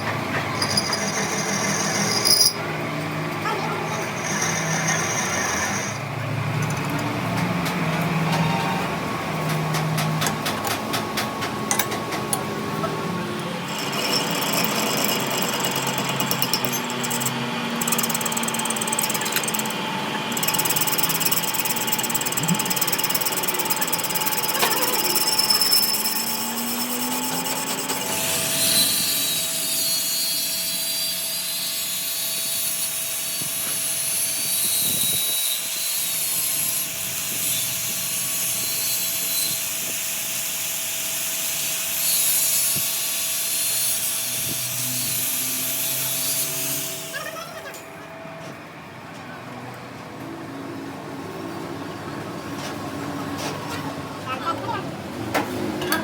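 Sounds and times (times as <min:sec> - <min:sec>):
power tool running: 0:11.6 - 0:47.9.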